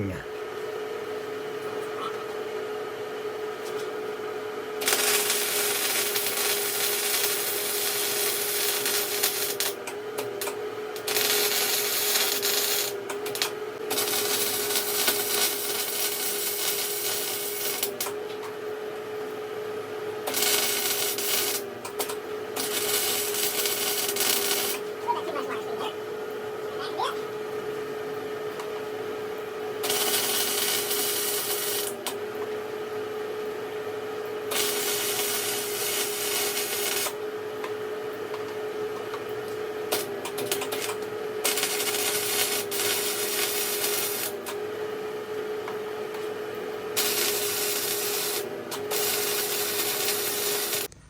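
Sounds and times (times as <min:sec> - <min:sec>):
welding arc crackling: 0:04.8 - 0:09.8, 0:10.4 - 0:18.1, 0:20.2 - 0:25.8, 0:29.8 - 0:32.2, 0:34.5 - 0:37.2, 0:39.9 - 0:44.6, 0:46.9 - 0:50.9.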